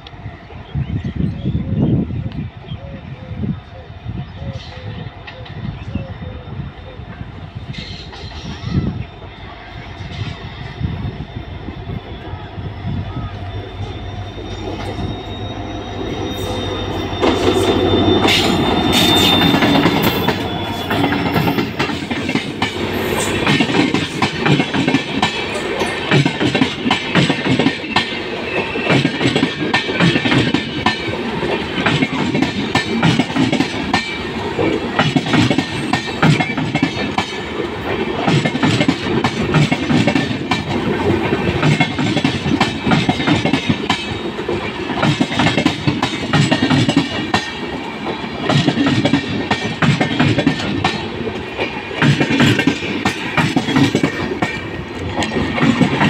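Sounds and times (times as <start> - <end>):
train wheels clacking over rail joints: 16.2 - 56.0.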